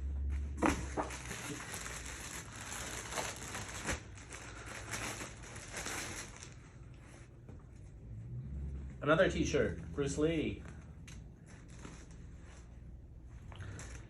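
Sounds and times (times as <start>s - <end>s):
packaging crinkling and rustling: 0.4s - 7.2s, 13.4s - 14.0s.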